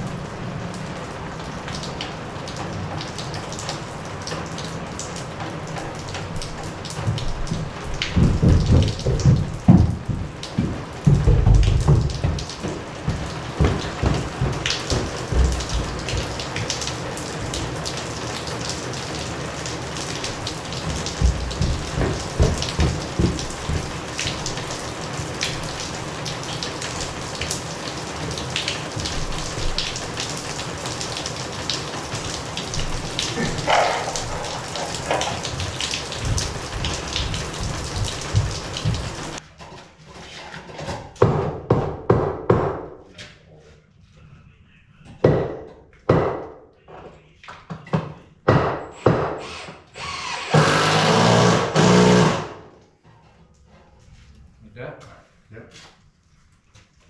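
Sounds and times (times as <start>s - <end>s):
water spraying from leaking pipe: 0.0s - 39.4s
knocks in plumbing: 5.8s - 17.8s, 20.7s - 25.6s, 32.1s - 39.4s, 40.9s - 42.9s, 45.1s - 46.6s, 47.9s - 49.5s.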